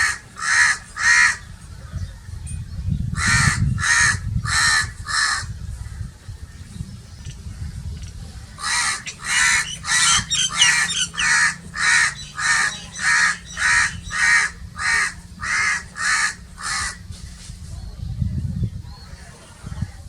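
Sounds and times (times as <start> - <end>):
crow cawing: 0.0 - 1.4, 3.2 - 5.5, 8.6 - 17.0.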